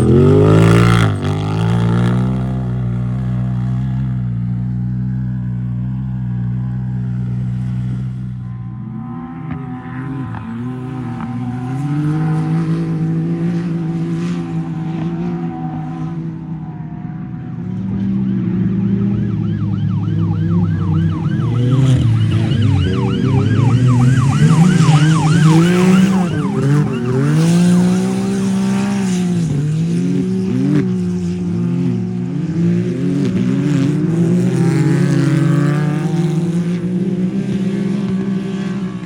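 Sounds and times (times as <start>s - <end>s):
engine revving: 0.0s - 3.9s, 18.0s - 39.0s
siren-like yelping tone: 18.2s - 29.2s.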